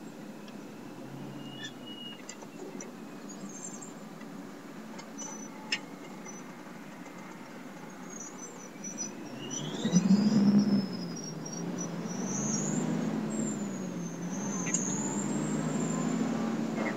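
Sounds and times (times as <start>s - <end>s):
truck diesel engine droning: 0.0s - 16.9s
turbocharger whistle rising: 9.2s - 16.9s.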